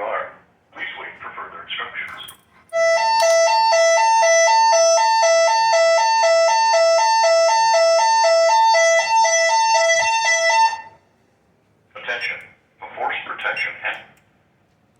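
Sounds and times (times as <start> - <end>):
two-tone electronic alarm: 2.7 - 11.0.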